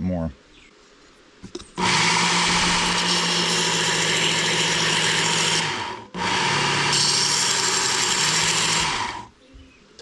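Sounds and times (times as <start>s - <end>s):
belt sander grinding steel: 1.8s - 9.3s.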